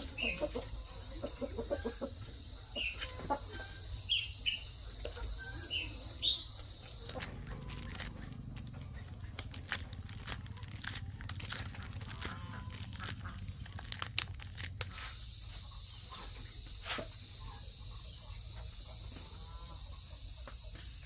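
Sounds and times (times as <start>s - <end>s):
chickens peeping: 0.0s - 21.0s
dry crackling and rustling: 6.9s - 15.3s.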